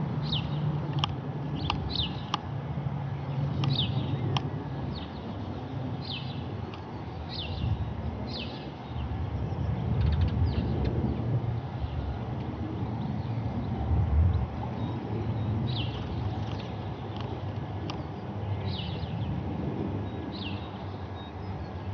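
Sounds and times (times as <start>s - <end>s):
distant jet engine rumble: 0.0s - 21.9s
bird chirping: 0.2s - 0.7s, 1.6s - 2.3s, 3.3s - 10.8s, 14.7s - 19.3s
sharp clicks: 3.6s - 4.5s.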